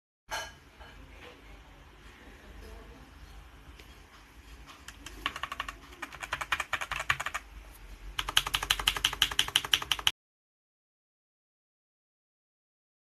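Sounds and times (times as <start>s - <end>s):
mechanical keyboard typing: 4.8s - 7.5s, 8.2s - 10.2s.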